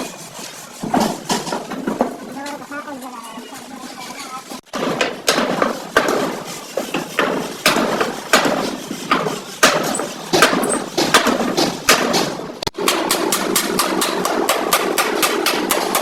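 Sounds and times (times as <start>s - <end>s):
hammer striking sheet metal: 0.8s - 2.1s, 4.7s - 16.0s.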